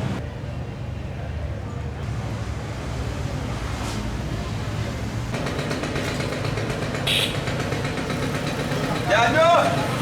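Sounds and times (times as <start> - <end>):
vehicle engine rumbling: 4.3 - 10.0.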